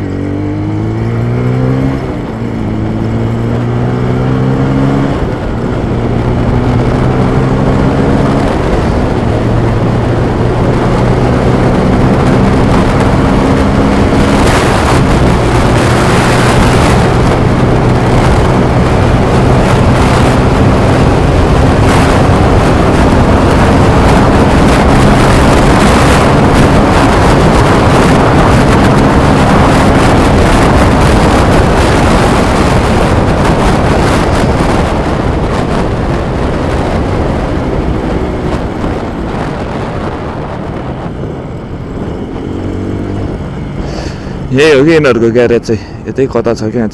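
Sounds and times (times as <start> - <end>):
motorcycle engine running: 0.0 - 46.1
wind rush on microphone: 0.0 - 46.9.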